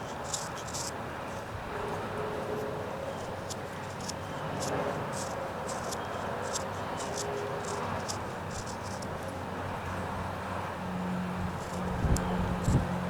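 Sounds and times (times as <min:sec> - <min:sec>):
hand tool scraping wood: 0:00.0 - 0:01.0, 0:03.3 - 0:09.3.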